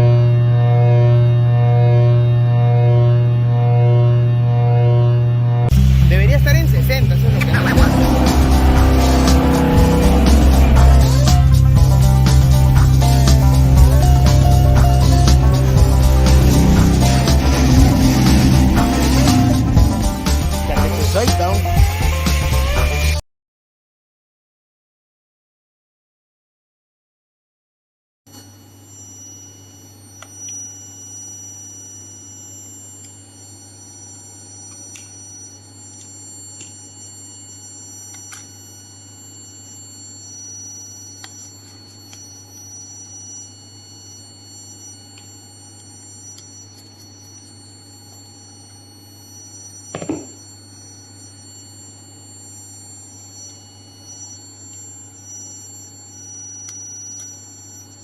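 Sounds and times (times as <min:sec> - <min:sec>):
machine low hum: 0:00.0 - 0:22.9
thump: 0:50.0 - 0:50.4.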